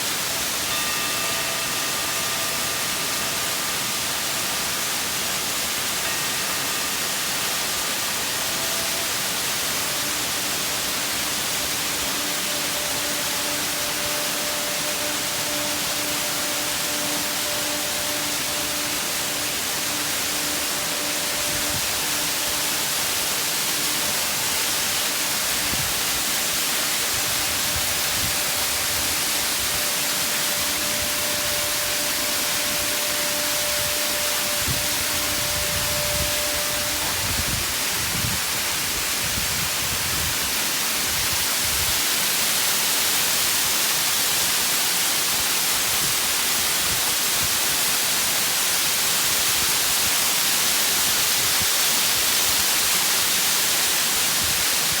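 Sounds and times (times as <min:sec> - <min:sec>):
singing bowl ringing tone: 0:00.0 - 0:41.6
waterfall rushing: 0:00.0 - 0:55.0.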